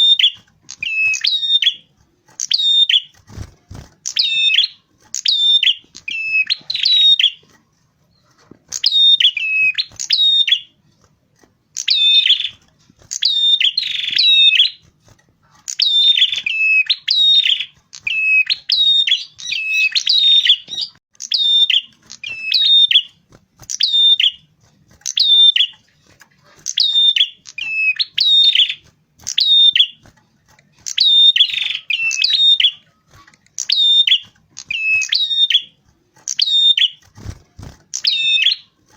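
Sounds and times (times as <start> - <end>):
small bird chirping: 0.0 - 38.9.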